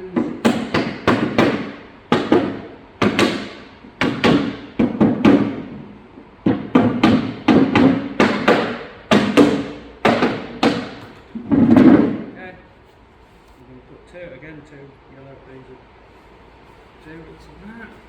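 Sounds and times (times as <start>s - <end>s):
rubber mallet knocking a panel: 0.1s - 12.3s.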